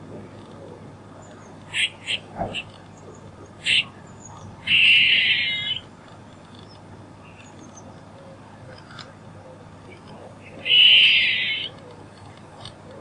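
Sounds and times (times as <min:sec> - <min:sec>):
high-pitched animal call: 0:01.7 - 0:02.7, 0:03.6 - 0:04.0, 0:04.6 - 0:05.8, 0:10.6 - 0:11.8.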